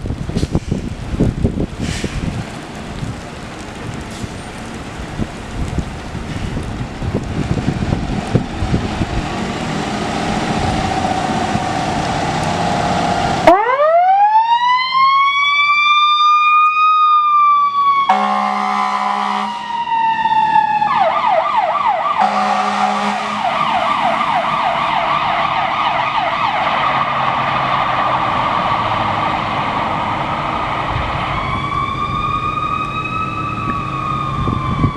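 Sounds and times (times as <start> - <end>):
road noise: 0.0 - 34.9
siren wailing: 13.0 - 34.9
siren fast yelp: 13.5 - 27.2, 31.3 - 34.9
air horn blasts: 18.1 - 19.7, 22.2 - 23.6.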